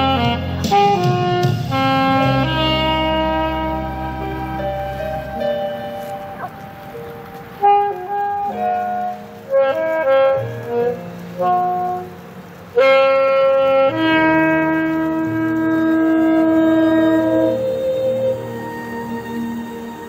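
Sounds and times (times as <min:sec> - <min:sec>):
wind instrument melody: 0:00.0 - 0:20.0
low sustained accompanying notes: 0:03.0 - 0:09.5, 0:14.8 - 0:20.0.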